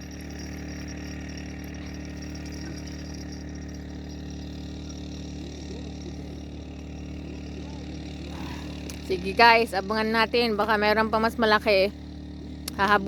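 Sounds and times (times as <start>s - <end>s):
small engine running: 0.0s - 13.0s.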